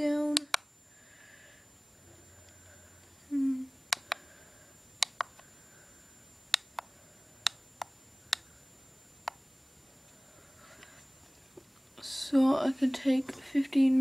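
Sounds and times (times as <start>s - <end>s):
low vocal hum: 2.0s - 4.8s
camcorder buttons clicking: 3.9s - 4.2s, 5.0s - 5.4s.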